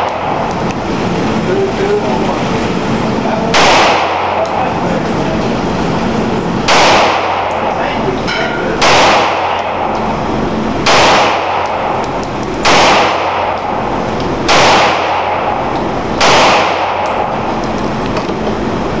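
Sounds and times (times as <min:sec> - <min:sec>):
pistol shots: 0:03.5 - 0:04.6, 0:06.6 - 0:07.8, 0:08.8 - 0:10.1, 0:10.8 - 0:13.8, 0:14.4 - 0:17.4.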